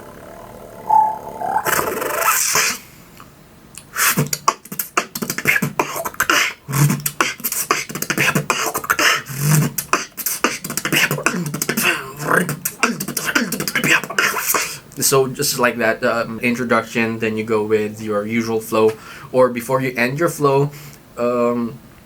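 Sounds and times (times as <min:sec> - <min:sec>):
person beatboxing: 0:00.0 - 0:02.9, 0:03.8 - 0:14.8
hissy vocal effect: 0:00.0 - 0:03.1, 0:03.9 - 0:14.9.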